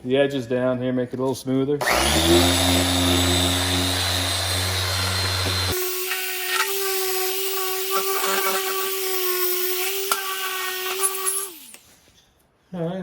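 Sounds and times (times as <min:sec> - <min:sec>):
disc sander whining: 0:01.8 - 0:11.8.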